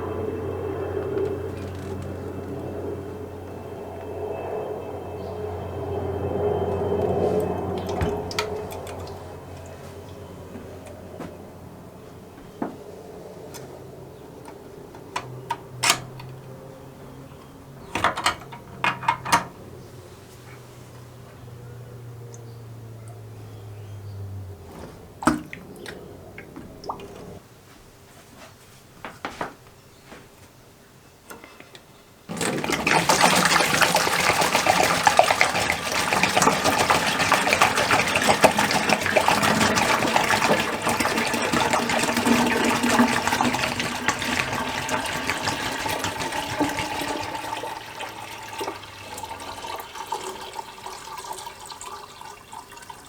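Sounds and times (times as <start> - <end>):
water rushing: 0.7 - 3.2, 6.7 - 9.9, 24.7 - 27.4, 32.3 - 53.0
handling clicks and knocks: 17.8 - 19.6.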